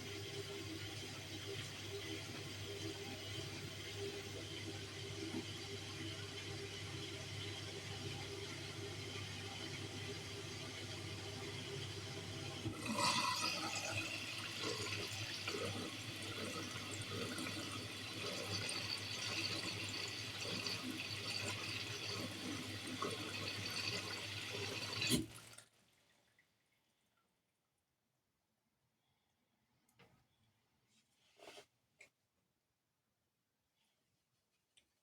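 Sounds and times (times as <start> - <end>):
washing machine humming: 0.0 - 26.0.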